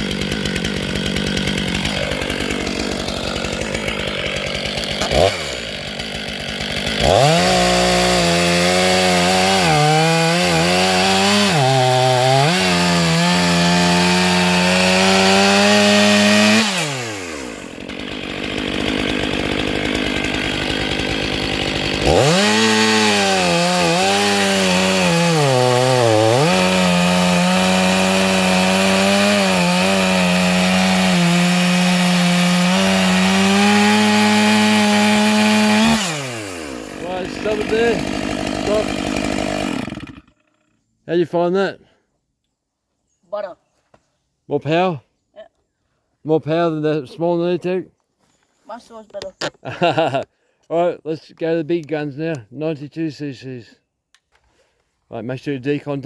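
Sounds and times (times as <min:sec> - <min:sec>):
chainsaw engine revving: 0:00.0 - 0:40.8, 0:49.6 - 0:50.2.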